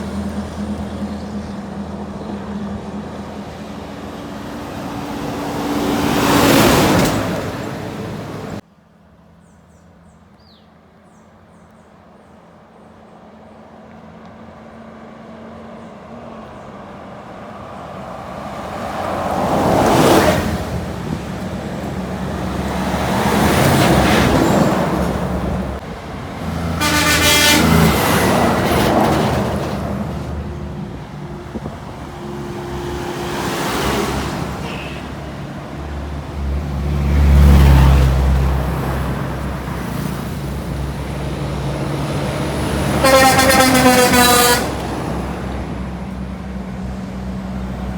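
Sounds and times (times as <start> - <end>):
truck engine running: 0.0 - 6.6
vehicles passing: 0.0 - 47.9
vehicle horn: 26.6 - 29.1, 34.5 - 35.3, 42.8 - 44.9.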